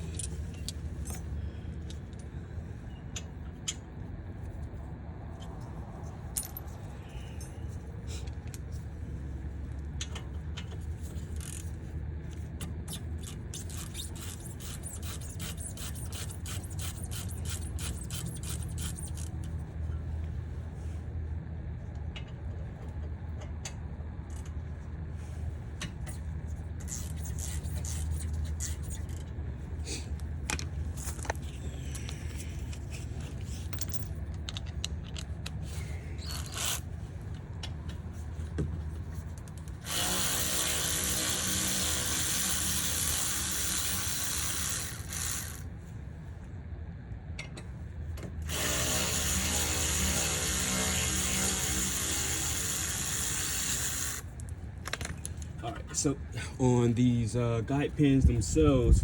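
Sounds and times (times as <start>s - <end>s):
tool handling clicks: 30.5s - 35.6s
power tool running: 39.8s - 45.7s, 48.5s - 54.3s.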